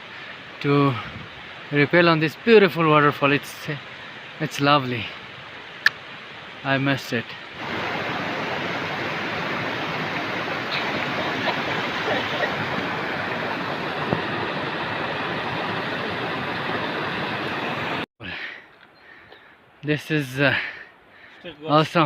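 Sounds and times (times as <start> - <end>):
waterfall roaring: 7.5 - 18.0.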